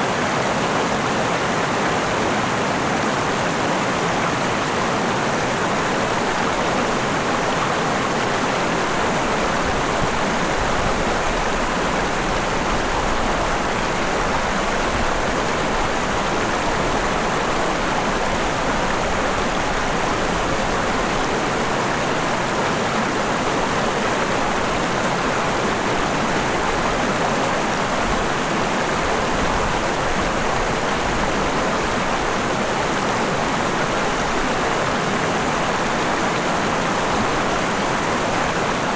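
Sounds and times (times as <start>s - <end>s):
river water flowing: 0.0s - 38.9s.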